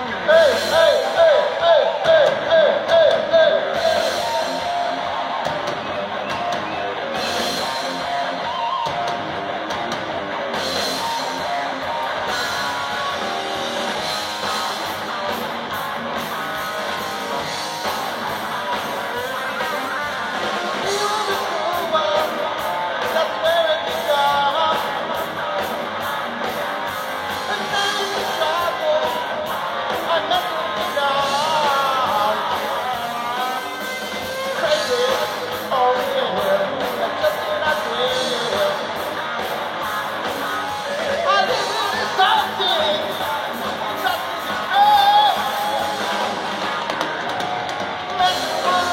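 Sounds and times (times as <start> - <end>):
person singing: 0.0 - 5.2, 19.0 - 25.9, 27.3 - 39.2, 40.7 - 46.4, 48.1 - 48.9
guitar: 0.0 - 48.9
steady drum beat: 0.0 - 48.9.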